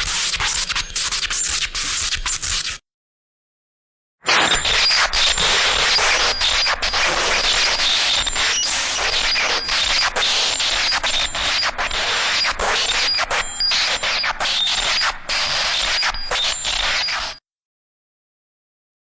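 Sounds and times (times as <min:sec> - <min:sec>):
electrical crackling and sparking: 0:00.0 - 0:02.8.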